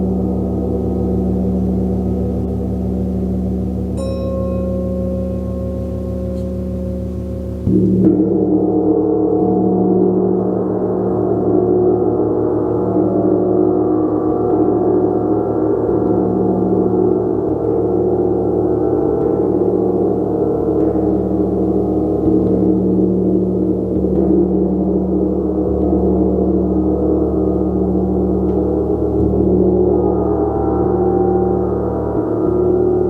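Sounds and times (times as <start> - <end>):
gong ringing: 0.0 - 8.3.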